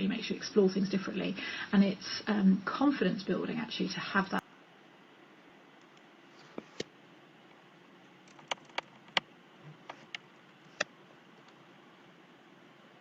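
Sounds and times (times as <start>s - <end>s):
faint steady hiss: 0.0s - 13.0s
computer clicks: 8.2s - 9.3s.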